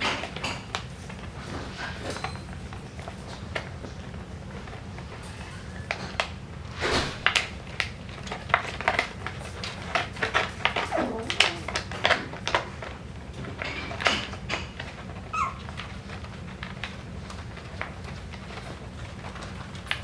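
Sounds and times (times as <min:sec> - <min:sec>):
puppies scuffling and clicking: 0:00.0 - 0:20.0
high puppy whine: 0:05.1 - 0:07.7, 0:10.4 - 0:12.2, 0:14.8 - 0:16.1.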